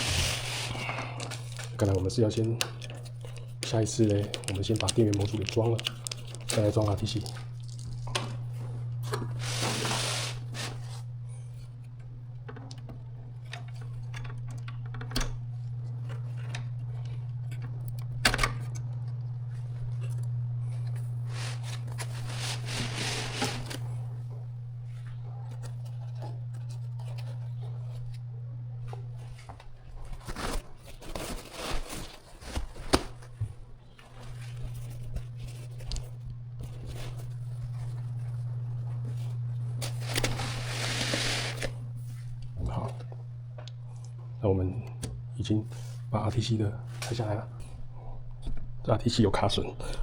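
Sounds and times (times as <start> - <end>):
rustling handling noise: 0.0 - 12.0, 19.5 - 28.2, 28.8 - 43.3
steady low hum: 0.0 - 50.0.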